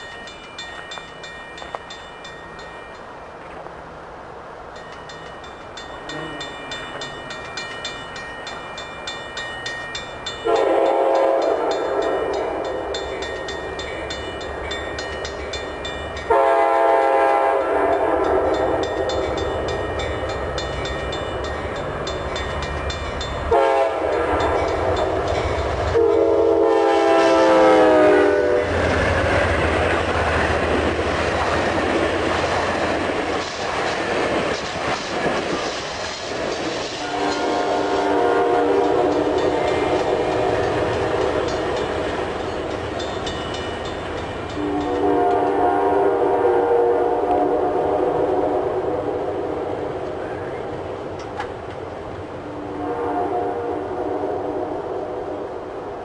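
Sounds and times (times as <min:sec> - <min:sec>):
train rumbling: 0:00.0 - 0:56.0
wheels clicking on rails: 0:04.7 - 0:16.3, 0:17.2 - 0:26.0, 0:28.7 - 0:45.5
locomotive air horn: 0:10.4 - 0:12.6, 0:16.3 - 0:18.8, 0:23.5 - 0:24.6, 0:25.9 - 0:28.8, 0:37.0 - 0:39.4, 0:44.6 - 0:49.6, 0:52.7 - 0:55.2.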